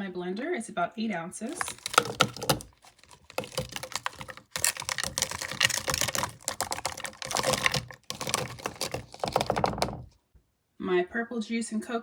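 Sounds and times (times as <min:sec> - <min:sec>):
frozen fruit clattering into blender jar: 0:01.5 - 0:10.1.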